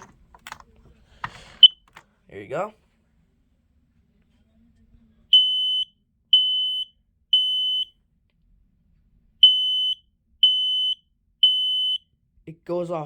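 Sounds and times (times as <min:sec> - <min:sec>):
smoke alarm beeping: 0:01.6 - 0:02.0, 0:05.4 - 0:07.9, 0:09.4 - 0:12.0.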